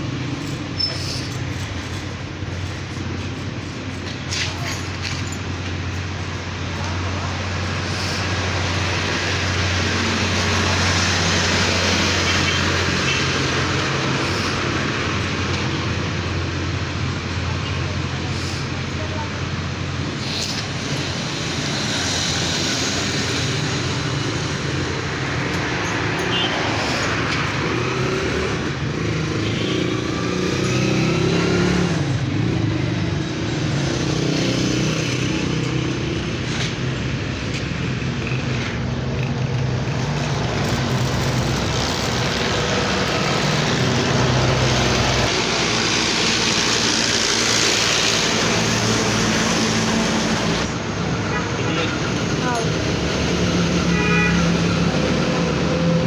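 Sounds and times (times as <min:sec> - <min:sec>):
engine running: 0:00.0 - 0:51.0
road traffic noise: 0:00.0 - 0:56.0.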